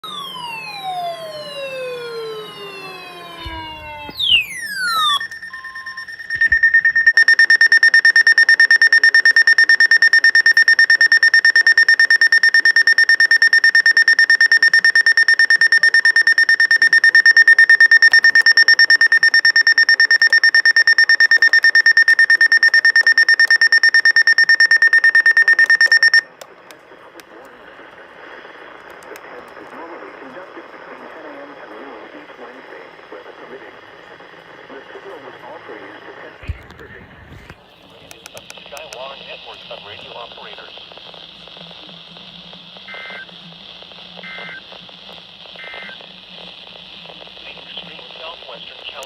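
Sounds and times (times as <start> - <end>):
falling sweeping electronic tones: 0.1 - 7.2
high-pitched electronic alarm beeps: 0.1 - 26.3.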